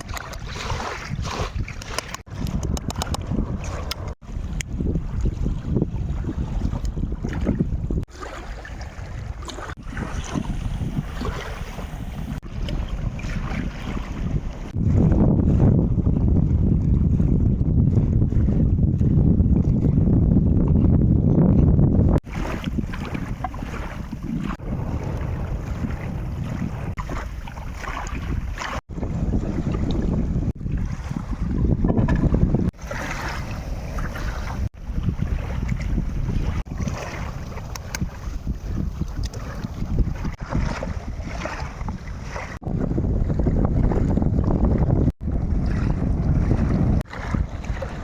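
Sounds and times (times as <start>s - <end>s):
wind buffeting microphone: 0.0s - 48.0s
low rumble of fire: 24.1s - 27.0s.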